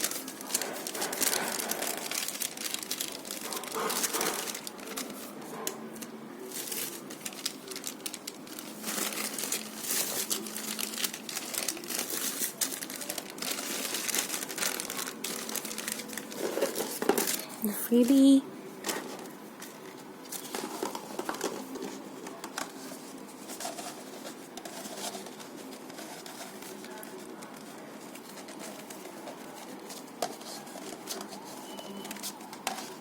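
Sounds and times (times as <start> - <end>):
packaging crinkling: 0.0 - 5.4, 6.0 - 17.7.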